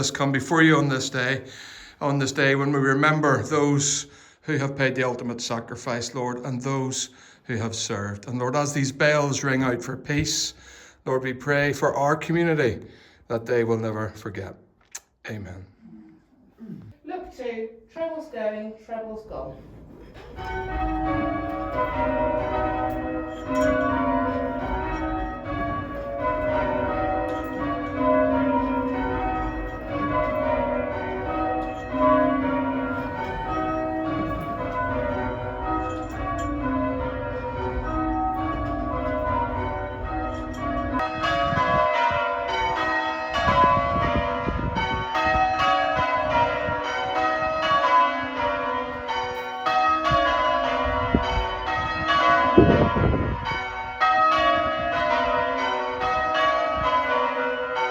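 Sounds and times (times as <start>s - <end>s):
church bells change ringing: 0.0s - 4.0s, 20.2s - 57.9s.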